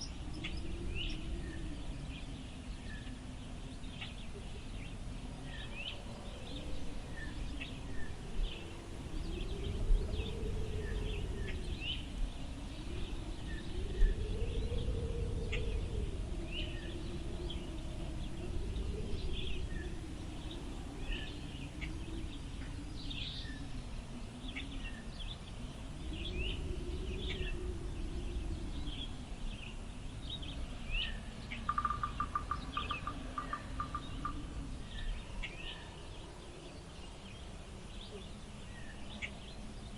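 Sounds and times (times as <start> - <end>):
wind blowing: 0.0 - 39.9
low whistling tone: 5.4 - 23.8.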